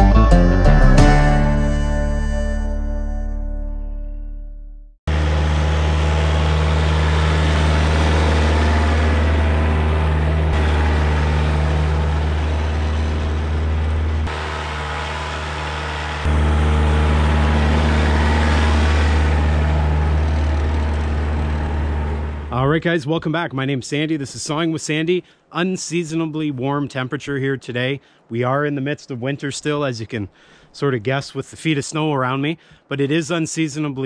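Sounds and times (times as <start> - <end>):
sawmill engine running: 5.1 - 22.8.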